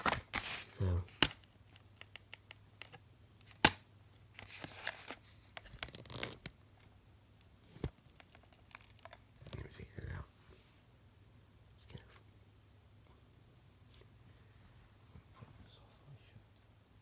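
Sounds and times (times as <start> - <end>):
rustling: 0.0 - 1.4.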